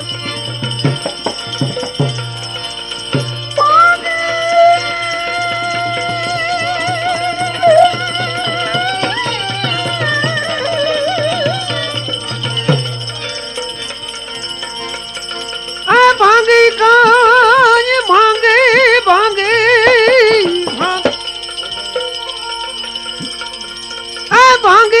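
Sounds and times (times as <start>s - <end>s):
steady drone: 0.0s - 17.2s
jingling percussion: 0.0s - 25.0s
ornamented melodic lead: 0.0s - 25.0s.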